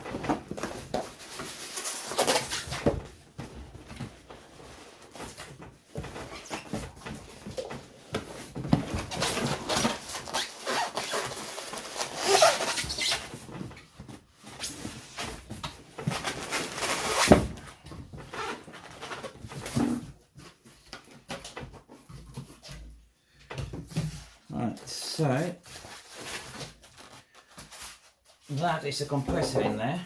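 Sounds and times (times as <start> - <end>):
cardboard rustling and scraping: 0.0 - 23.0, 23.7 - 30.0.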